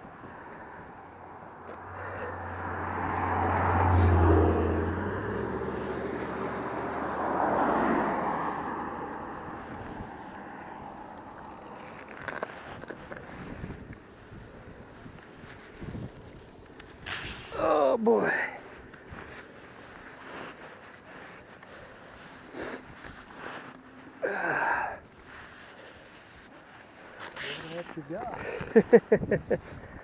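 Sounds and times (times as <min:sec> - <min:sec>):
vehicles passing with tyre noise: 0:00.0 - 0:30.0
deep engine hum: 0:00.6 - 0:12.2.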